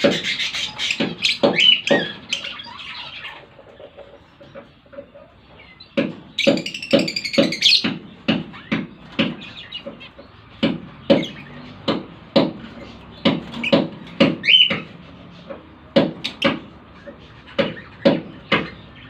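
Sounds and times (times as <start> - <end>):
bird chirps: 0.0 - 11.9, 12.7 - 15.6.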